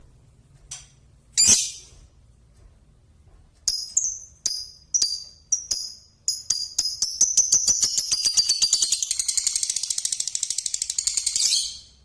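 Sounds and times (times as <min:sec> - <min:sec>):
lovebird chirping: 0:01.4 - 0:01.9, 0:03.7 - 0:12.0.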